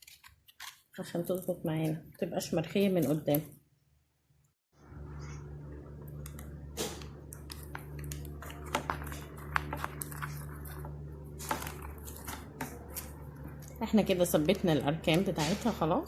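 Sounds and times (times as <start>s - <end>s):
low electrical hum: 4.8s - 16.0s.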